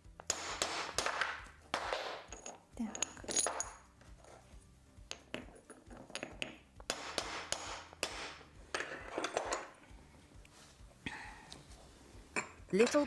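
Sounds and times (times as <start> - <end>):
hammer chipping tile: 0.2 - 2.2, 6.9 - 8.4.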